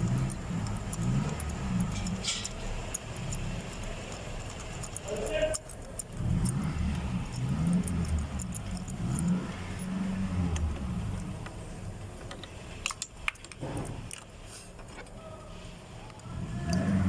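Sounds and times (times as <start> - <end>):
sharp clicks: 0.0 - 9.9
metal tools clinking: 0.0 - 10.1.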